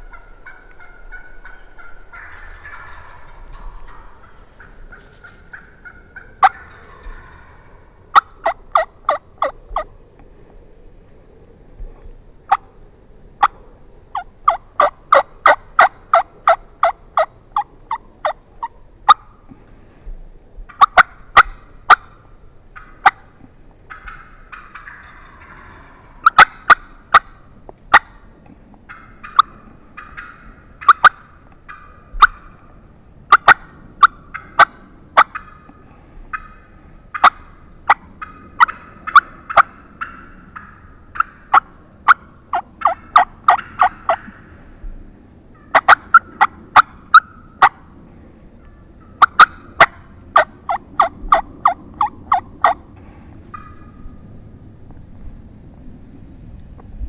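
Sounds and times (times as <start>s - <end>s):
turkey call yelps: 0.0s - 9.9s, 13.4s - 19.4s, 20.7s - 22.2s, 23.9s - 28.2s, 28.9s - 32.6s, 33.3s - 44.5s, 45.5s - 47.8s, 48.6s - 52.8s, 53.5s - 54.2s.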